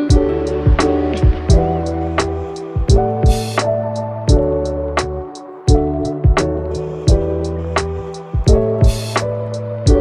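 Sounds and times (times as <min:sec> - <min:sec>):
band music with drums and guitar: 0:00.0 - 0:03.7.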